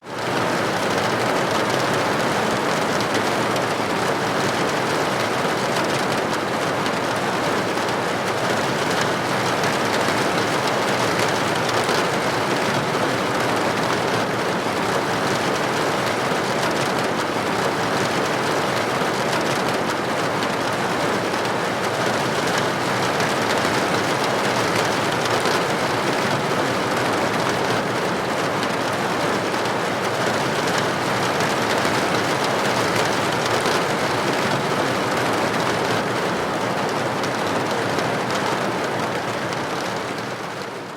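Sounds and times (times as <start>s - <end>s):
heavy rain on roof and window: 0.0s - 40.9s.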